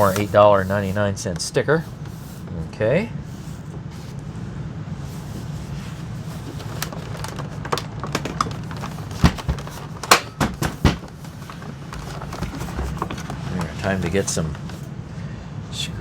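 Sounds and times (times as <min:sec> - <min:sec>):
steady low hum: 0:00.0 - 0:16.0
plastic parts clicking and knocking: 0:06.5 - 0:13.8.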